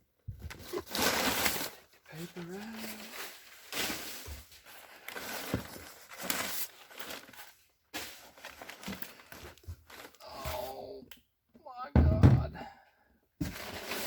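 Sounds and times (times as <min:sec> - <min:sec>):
packing paper crinkling: 0:00.5 - 0:10.4.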